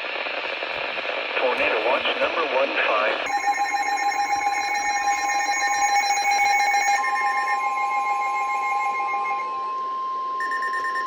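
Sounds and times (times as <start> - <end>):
electronic alarm tones: 3.3 - 11.0.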